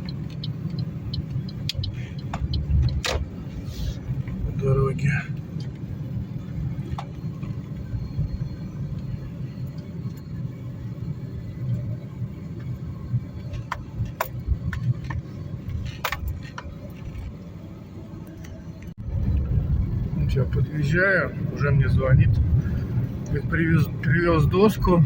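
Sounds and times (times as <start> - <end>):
car road and engine rumble: 0.0 - 25.0.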